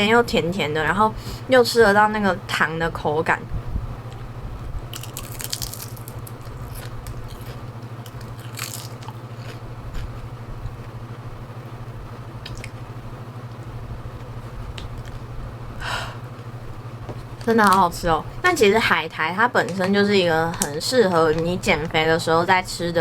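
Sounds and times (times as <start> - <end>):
low steady hum: 0.0 - 23.0
crunching seaweed snack: 4.9 - 11.0.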